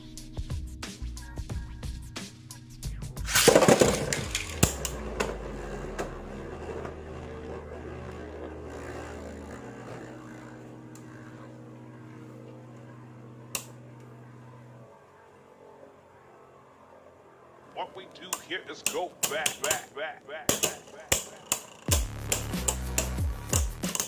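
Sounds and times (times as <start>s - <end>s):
spinning top launch rip: 3.2s - 14.3s, 18.9s - 24.0s
spinning top whirring: 3.2s - 24.0s
clicks: 17.7s - 24.0s.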